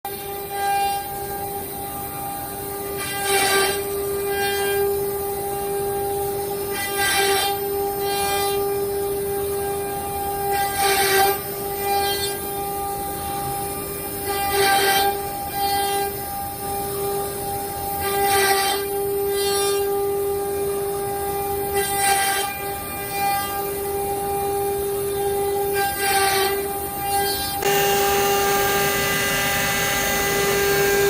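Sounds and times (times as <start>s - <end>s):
cnc router spindle whining: 0.1s - 31.0s
router cutting wood: 14.2s - 31.0s.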